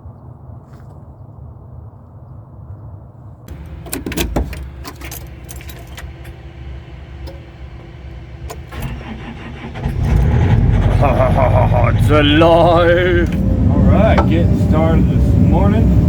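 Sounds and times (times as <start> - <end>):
sharp clicks and rattles: 3.5 - 15.0
excavator diesel engine rumbling: 3.5 - 16.0.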